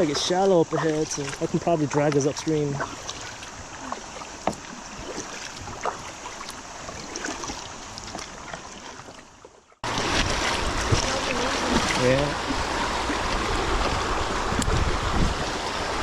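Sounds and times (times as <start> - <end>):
rushing water: 0.0 - 16.0
water running around kayak hull: 0.0 - 16.0
wind noise: 9.8 - 16.0.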